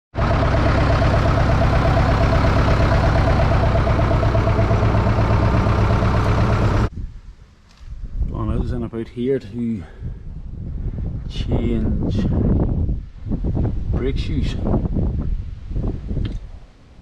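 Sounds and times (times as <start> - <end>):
tractor diesel engine running: 0.1 - 6.9.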